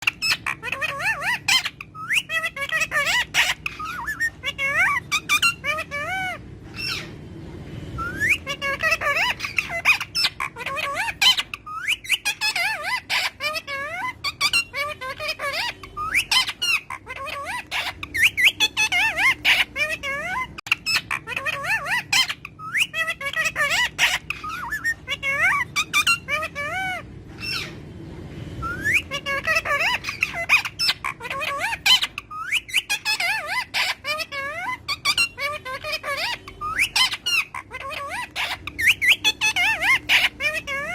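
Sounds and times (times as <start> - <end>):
parakeet whistled calls: 0.0 - 7.2, 7.9 - 27.9, 28.6 - 40.9.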